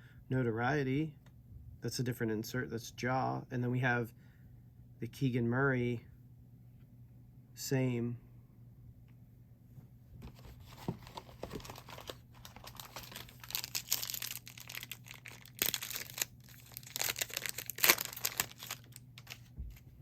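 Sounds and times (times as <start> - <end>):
plastic wrapper tearing and crinkling: 10.6 - 19.8.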